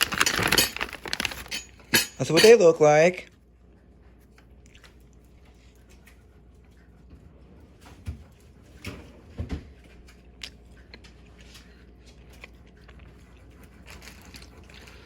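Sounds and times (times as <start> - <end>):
person chewing close to microphone: 3.6 - 7.1, 9.8 - 15.0.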